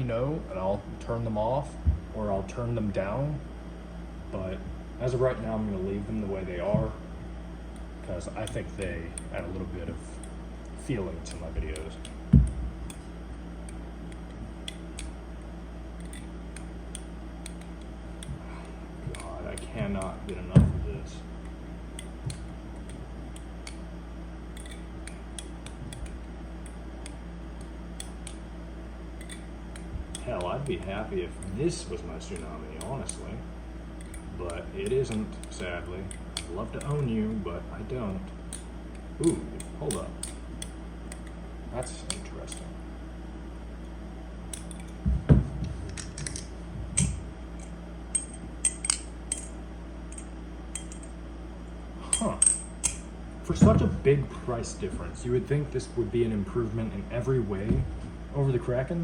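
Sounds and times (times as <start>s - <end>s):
steady low hum: 0.0s - 59.0s
dull thuds: 12.3s - 12.8s, 19.7s - 21.2s, 45.0s - 45.8s, 53.5s - 54.1s
butterfly knife clicking and clinking: 16.0s - 17.8s, 24.5s - 28.4s, 29.2s - 29.9s, 47.6s - 51.1s
butterfly knife metallic clicks: 24.6s - 28.4s, 29.2s - 29.9s.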